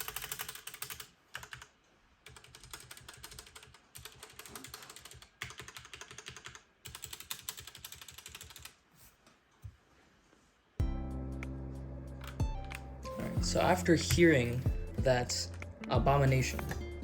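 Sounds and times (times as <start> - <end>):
mechanical keyboard typing: 0.0 - 8.8.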